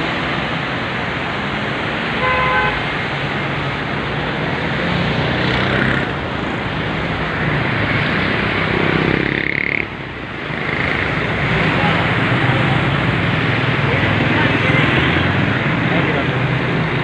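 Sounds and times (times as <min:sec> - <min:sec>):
floodwater rushing: 0:00.0 - 0:17.0
road traffic engines humming: 0:00.0 - 0:17.0
vehicle horn toot: 0:02.2 - 0:02.8.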